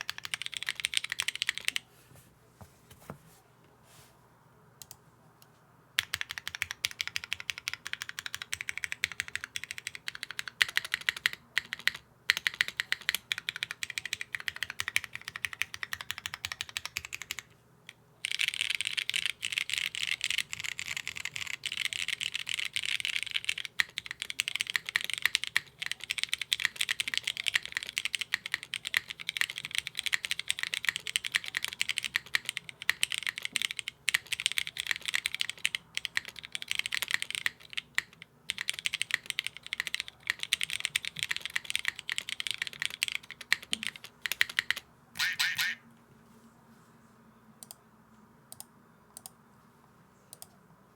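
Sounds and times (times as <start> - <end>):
mechanical keyboard typing: 0.0 - 1.8, 6.0 - 17.5, 18.2 - 45.7.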